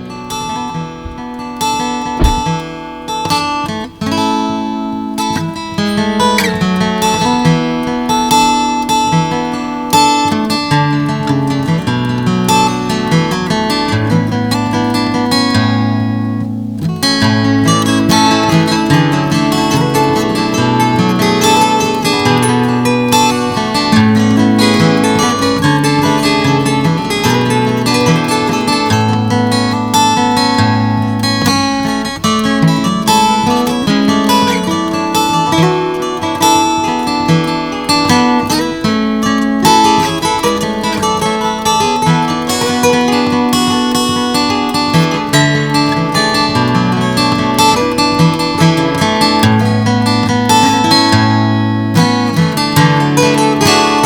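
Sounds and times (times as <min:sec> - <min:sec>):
acoustic guitar playing: 0:00.0 - 0:54.0
steady bass line: 0:02.1 - 0:02.6.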